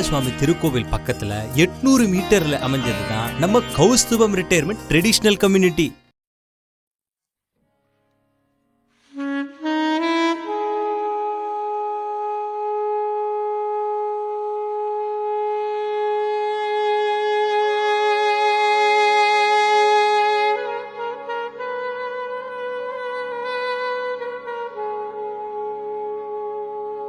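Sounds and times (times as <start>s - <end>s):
solo wind instrument: 0.0s - 6.0s, 9.1s - 27.0s.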